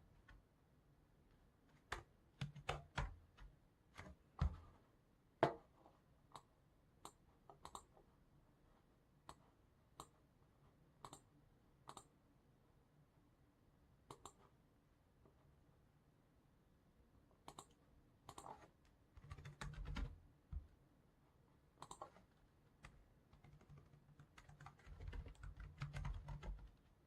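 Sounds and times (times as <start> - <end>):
computer mouse clicking: 1.7 - 4.6, 6.3 - 7.9, 10.0 - 10.2, 11.0 - 11.3, 11.9 - 12.1, 14.1 - 14.5, 17.4 - 20.6, 21.8 - 26.7
keyboard keystrokes: 1.9 - 4.6.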